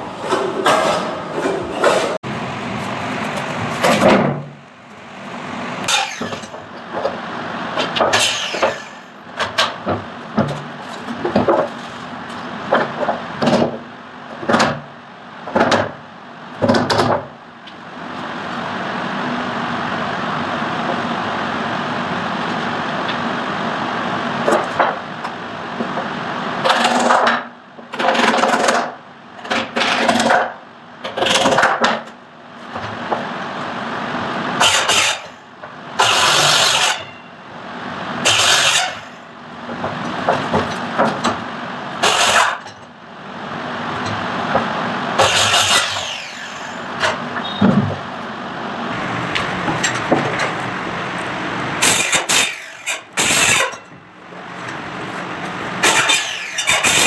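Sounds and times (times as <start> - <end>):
steady machine noise: 0.0 - 15.5, 32.3 - 57.0.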